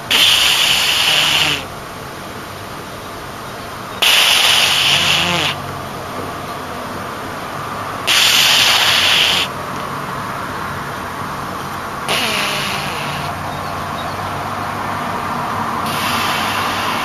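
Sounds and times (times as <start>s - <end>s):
person snoring: 12.1s - 13.4s, 15.9s - 17.0s.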